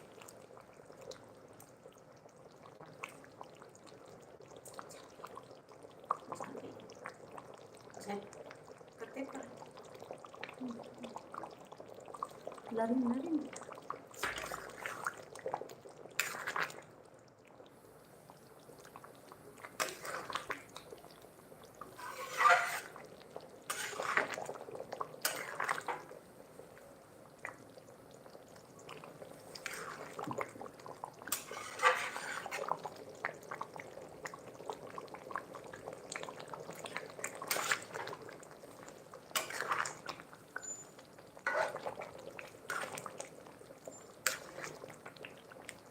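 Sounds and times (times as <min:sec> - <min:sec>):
spoon scraping a cooking pot: 0:19.8 - 0:20.5, 0:21.8 - 0:23.0, 0:23.7 - 0:24.4, 0:25.2 - 0:26.0, 0:31.3 - 0:32.8, 0:37.3 - 0:38.2, 0:39.4 - 0:40.0, 0:40.6 - 0:42.0, 0:42.7 - 0:43.1, 0:44.0 - 0:44.8.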